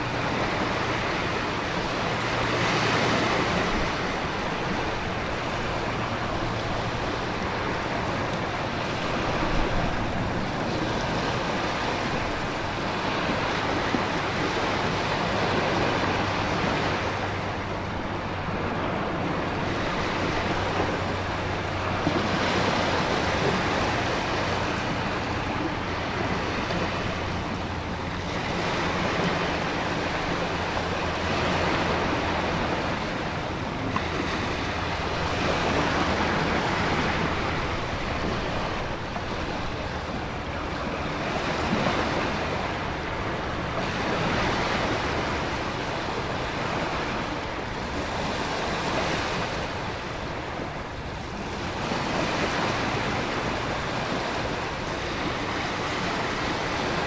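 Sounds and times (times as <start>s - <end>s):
low steady rumble: 0.0s - 57.0s
ocean waves surging: 0.0s - 57.0s
wind: 0.0s - 57.0s.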